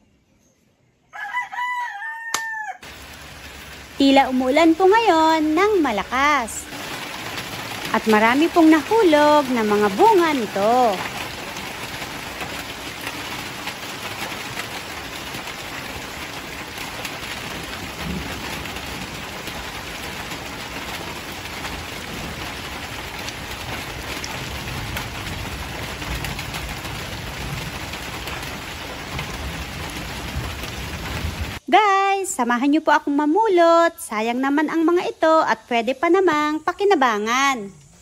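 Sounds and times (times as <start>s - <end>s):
rain falling: 2.8s - 31.7s.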